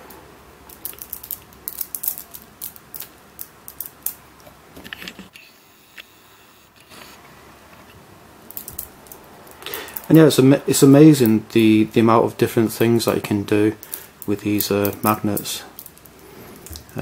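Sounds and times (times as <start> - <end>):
magnets clicking together: 0.7 - 4.2, 8.5 - 10.1, 13.0 - 17.0.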